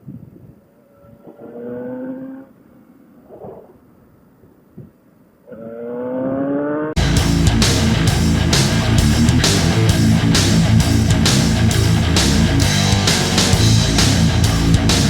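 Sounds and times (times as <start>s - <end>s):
motorcycle engine revving: 6.1s - 15.0s
heavy metal guitar music: 7.0s - 15.0s.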